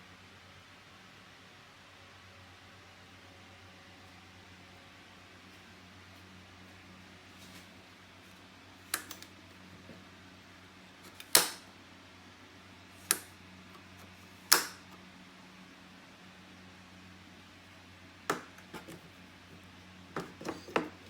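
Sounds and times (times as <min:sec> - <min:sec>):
faint steady hum: 0:00.0 - 0:21.0
hard objects knocking: 0:20.1 - 0:21.0.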